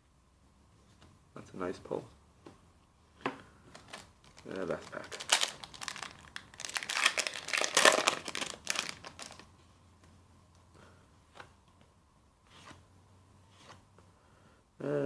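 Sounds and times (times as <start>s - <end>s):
foil pack tearing and crinkling: 3.8s - 9.4s.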